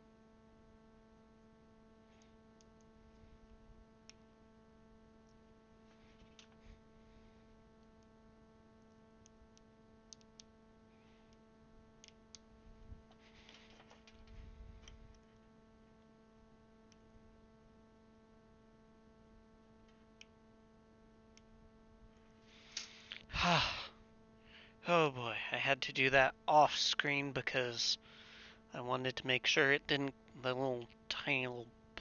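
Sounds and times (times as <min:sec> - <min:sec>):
low electrical hum: 0:00.0 - 0:32.0
small plastic clicks and rustles: 0:05.3 - 0:06.7, 0:12.0 - 0:16.1.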